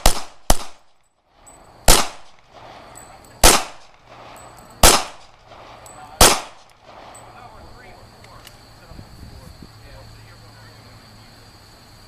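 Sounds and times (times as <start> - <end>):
pistol shots with echo: 0.0 - 1.0, 1.8 - 7.2.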